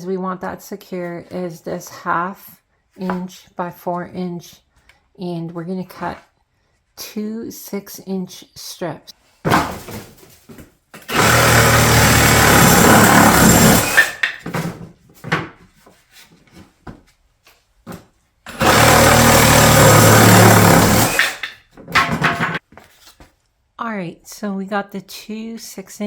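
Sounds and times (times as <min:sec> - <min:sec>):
power saw cutting board: 0:11.0 - 0:14.4, 0:18.5 - 0:22.6.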